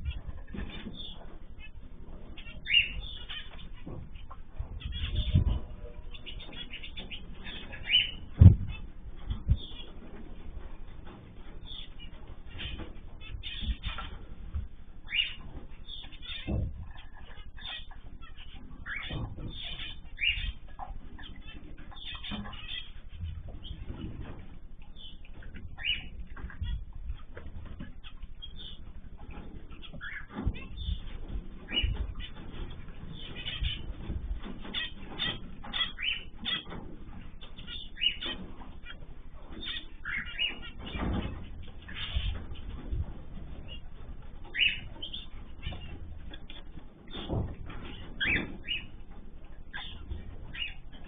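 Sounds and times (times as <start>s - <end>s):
birds chirping and calling: 0.0s - 51.0s
low background rumble: 0.0s - 51.0s
wings flapping: 0.0s - 51.0s
soft thuds: 8.3s - 9.9s.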